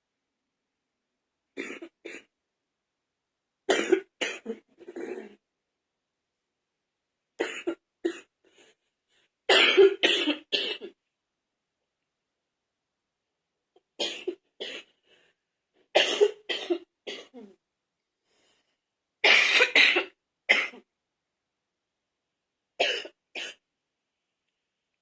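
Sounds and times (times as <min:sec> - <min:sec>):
woman coughing: 0:03.7 - 0:05.4, 0:09.5 - 0:10.9, 0:16.0 - 0:17.5, 0:19.2 - 0:20.8, 0:22.8 - 0:23.6.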